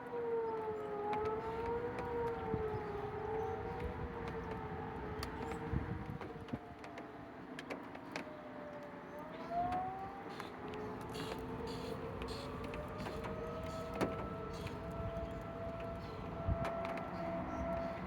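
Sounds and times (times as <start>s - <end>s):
warning siren rising tones: 11.2s - 18.0s.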